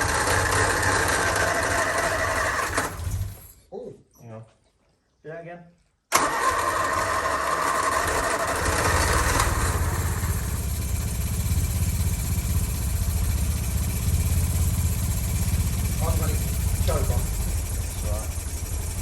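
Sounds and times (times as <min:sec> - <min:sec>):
car engine idling: 0:08.7 - 0:19.0.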